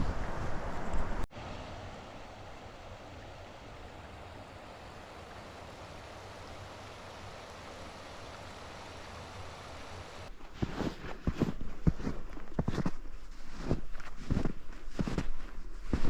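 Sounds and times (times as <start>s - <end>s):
rushing outdoor ambience: 0.0s - 10.4s.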